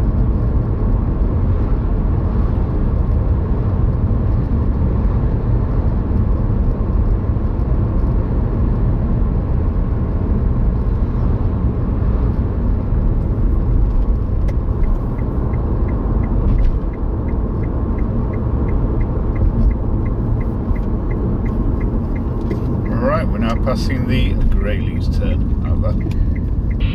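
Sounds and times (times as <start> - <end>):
car engine and road rumble: 0.0 - 26.9
light regular ticking: 14.0 - 26.9.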